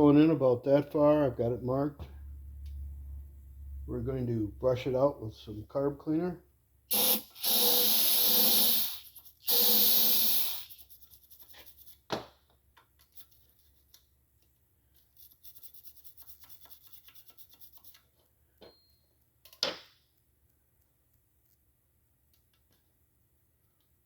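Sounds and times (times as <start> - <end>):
aerosol spray bursts: 6.9 - 11.0
brush scrubbing a hole: 9.0 - 12.0, 15.2 - 18.0.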